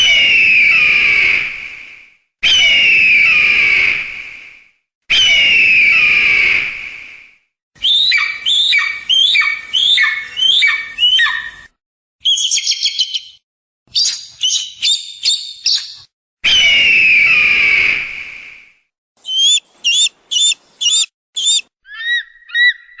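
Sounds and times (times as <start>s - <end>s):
descending piping whistles: 0.0s - 1.5s, 2.4s - 4.1s, 5.1s - 13.4s, 14.0s - 23.0s
eagle scream: 0.0s - 1.5s, 2.4s - 4.0s, 5.1s - 6.7s, 7.8s - 12.6s, 16.4s - 18.1s, 19.2s - 23.0s
eagle chatter and chirping: 7.8s - 11.6s, 12.2s - 13.4s, 14.0s - 16.0s, 19.2s - 23.0s.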